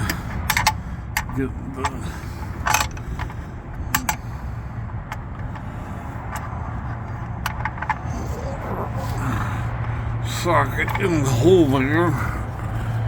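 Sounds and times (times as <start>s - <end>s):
metallic clicks of socket and ratchet: 0.0s - 1.4s, 2.4s - 4.4s
low vehicle rumble: 0.0s - 13.0s.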